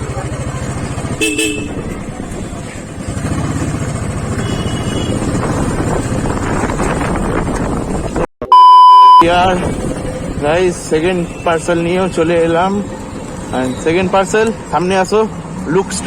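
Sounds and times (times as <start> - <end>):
motorcycle engine running: 0.0 - 8.2, 9.3 - 11.8
wind on microphone: 5.0 - 8.2
loud steady beep: 8.5 - 9.2.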